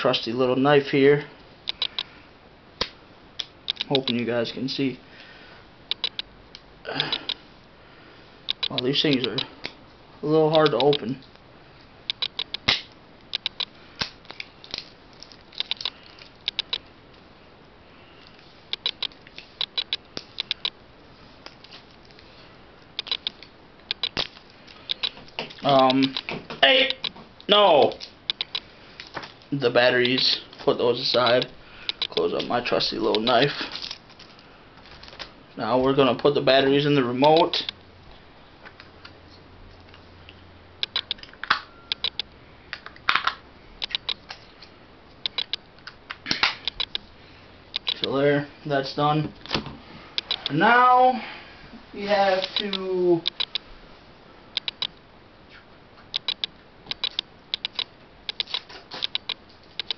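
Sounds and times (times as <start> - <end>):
batteries clicking into remote: 14.3 - 16.8.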